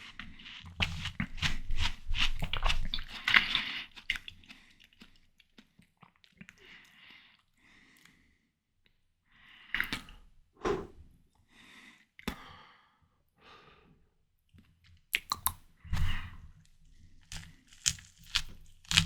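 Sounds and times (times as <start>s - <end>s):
wet chewing: 0.4s - 8.2s, 15.2s - 16.3s, 17.2s - 19.0s
breaths: 6.6s - 8.6s, 9.3s - 10.2s, 11.5s - 14.1s, 15.9s - 17.1s
crisp crunching bites: 17.2s - 19.0s.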